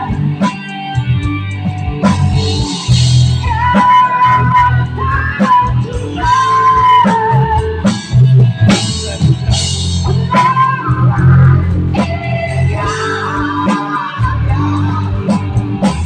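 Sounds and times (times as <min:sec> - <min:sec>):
bass: 0:00.0 - 0:16.0
drum kit: 0:00.0 - 0:16.0
guitar: 0:00.0 - 0:16.0.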